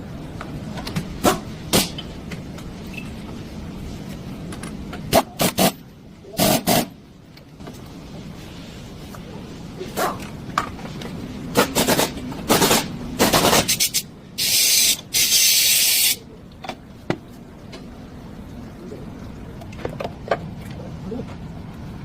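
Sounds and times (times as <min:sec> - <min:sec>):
hissing spray bursts: 0:06.4 - 0:06.9, 0:11.5 - 0:16.2.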